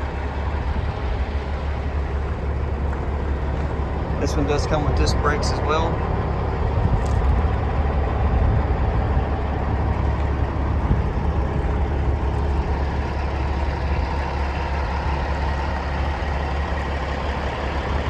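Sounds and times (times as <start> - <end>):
diesel engine idling: 0.0 - 18.0.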